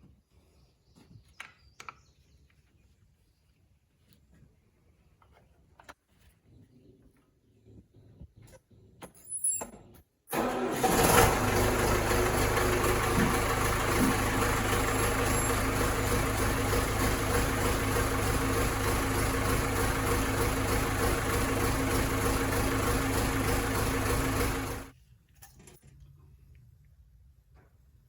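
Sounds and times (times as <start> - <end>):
tractor diesel engine idling: 10.3 - 24.9.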